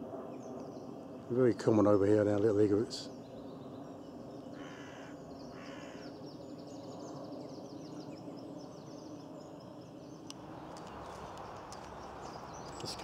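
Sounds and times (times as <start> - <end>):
low background hum: 0.2 - 13.0
songbird chattering song: 2.4 - 13.0
crow cawing: 4.5 - 6.2.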